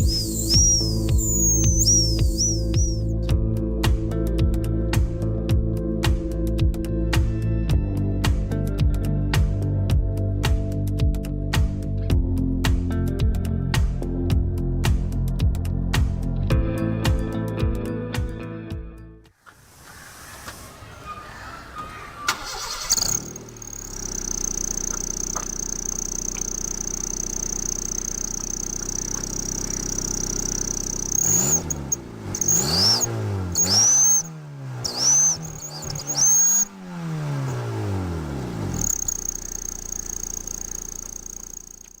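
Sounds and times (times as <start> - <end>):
car engine starting and revving: 0.0 - 3.1, 19.7 - 41.7.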